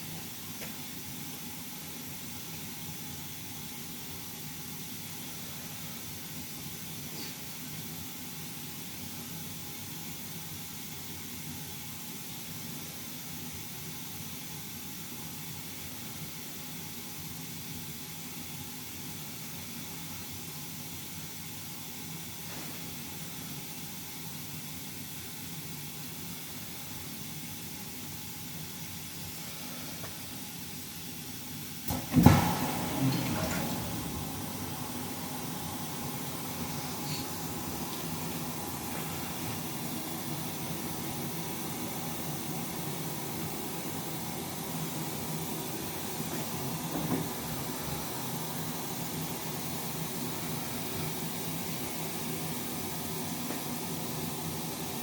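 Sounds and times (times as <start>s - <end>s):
loud sudden knock: 31.9s - 34.5s
steady hiss: 31.9s - 55.0s.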